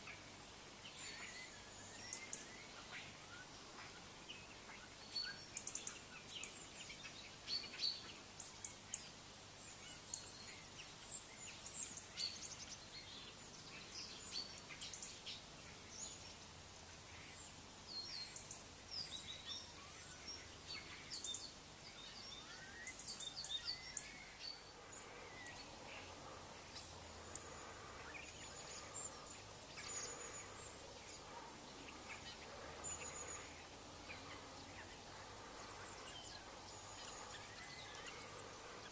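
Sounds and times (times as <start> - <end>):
faint background hiss: 0.0 - 38.9
small birds chirping: 0.0 - 38.9.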